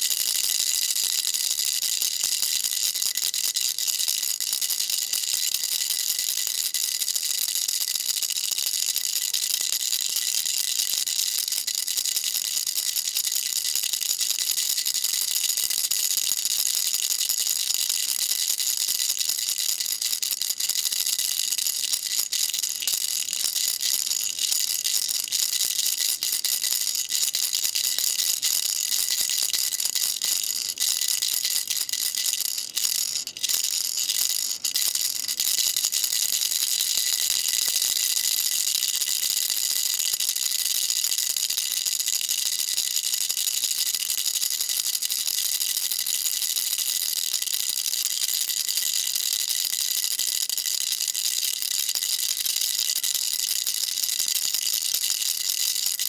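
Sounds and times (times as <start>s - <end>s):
baby rattle shaking: 16.8s - 56.0s.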